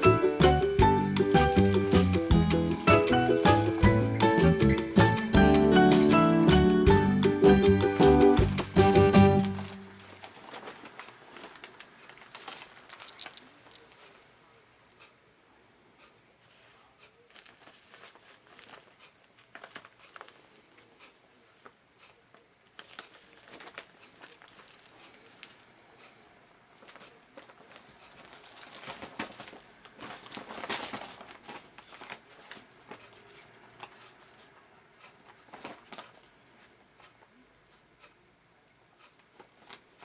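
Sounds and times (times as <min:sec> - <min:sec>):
bells in cat toy jingling: 0:00.0 - 0:10.4.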